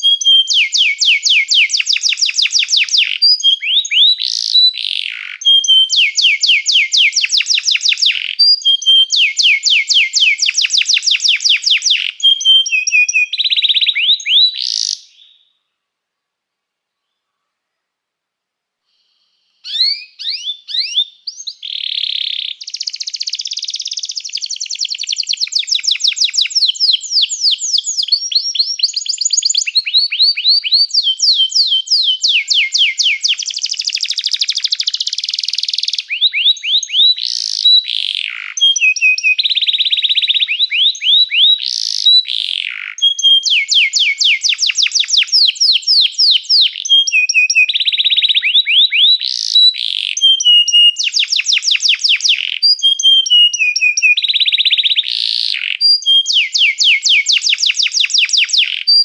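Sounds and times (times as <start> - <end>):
canary singing trills: 0.0 - 15.5, 19.2 - 59.0
sharp sweeping whistles: 19.7 - 21.6.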